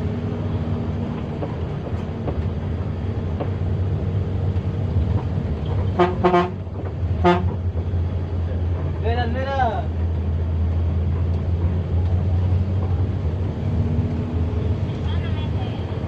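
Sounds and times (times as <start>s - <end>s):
bus engine running: 0.0s - 16.0s
short horn toots: 6.0s - 6.6s, 7.2s - 7.6s.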